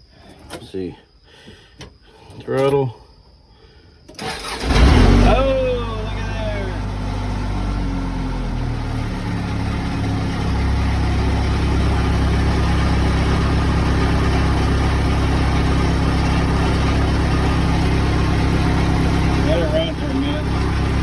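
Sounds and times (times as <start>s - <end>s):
diesel engine running: 4.2s - 21.0s.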